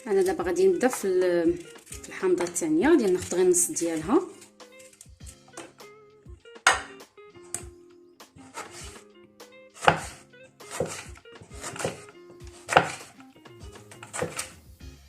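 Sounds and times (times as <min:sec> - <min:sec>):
background music: 0:00.0 - 0:15.0
knife cutting a lemon: 0:00.9 - 0:05.8, 0:08.4 - 0:09.0, 0:09.8 - 0:14.6.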